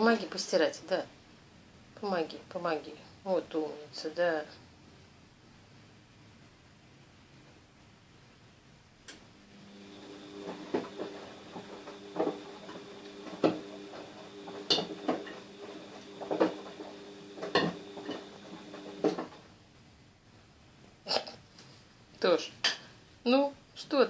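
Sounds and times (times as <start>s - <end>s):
washing machine motor hum: 9.2s - 19.5s
washing machine drum knocking: 10.4s - 19.3s.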